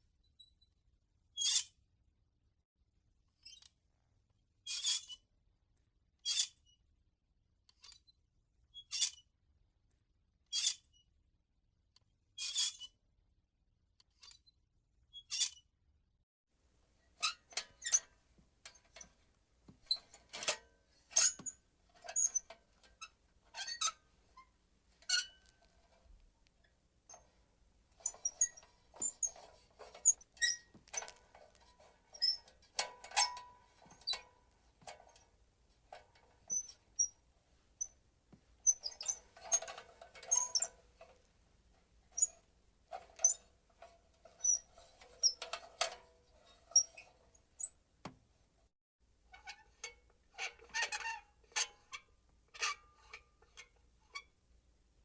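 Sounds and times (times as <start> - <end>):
metal lantern creaking and squeaking: 17.2 - 19.2, 19.8 - 25.5, 28.0 - 34.2, 36.4 - 37.1, 38.6 - 41.1, 42.1 - 43.5, 44.2 - 47.7, 49.3 - 54.3.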